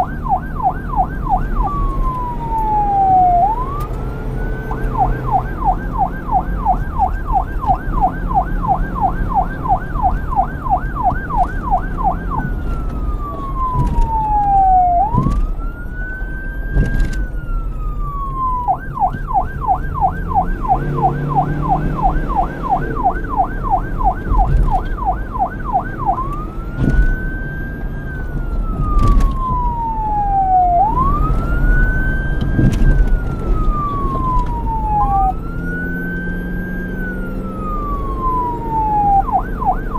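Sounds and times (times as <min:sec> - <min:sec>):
police siren yelp and wail: 0:00.0 - 0:39.9.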